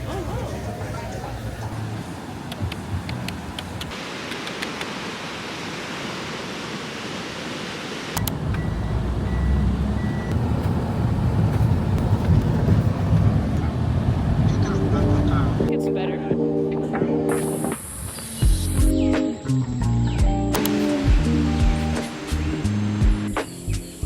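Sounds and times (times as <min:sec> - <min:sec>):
steady hiss: 0:17.3 - 0:24.0.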